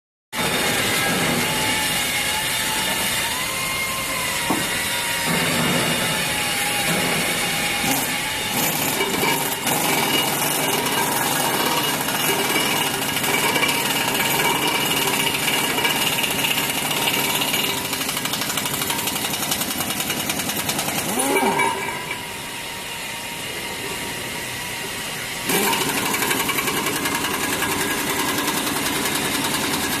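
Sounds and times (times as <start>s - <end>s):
machine whine: 0.4s - 30.0s
metalworking machinery clatter: 4.4s - 22.4s, 25.5s - 30.0s.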